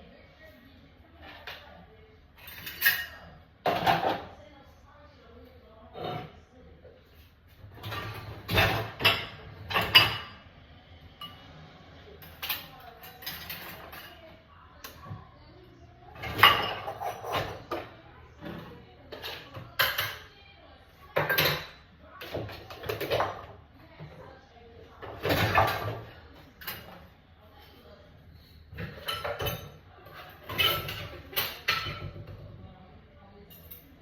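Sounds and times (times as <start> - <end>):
dishes and cutlery clattering: 2.4 - 4.4, 5.9 - 6.4, 7.5 - 10.5, 11.2 - 15.3, 16.0 - 20.4, 21.0 - 27.2, 28.4 - 32.6, 33.4 - 34.0.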